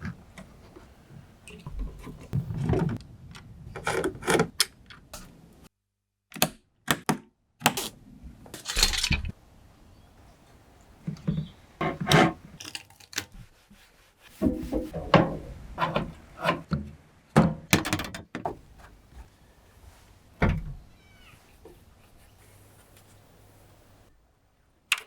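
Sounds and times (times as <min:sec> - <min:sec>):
hard parts clicking and knocking: 0:01.7 - 0:05.1, 0:14.4 - 0:18.8
faint steady background noise: 0:07.6 - 0:25.0.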